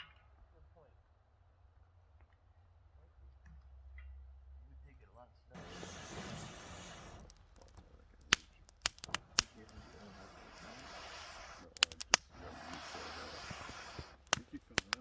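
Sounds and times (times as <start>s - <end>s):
faint steady hiss: 4.7s - 15.0s
sharp pops: 5.6s - 15.0s.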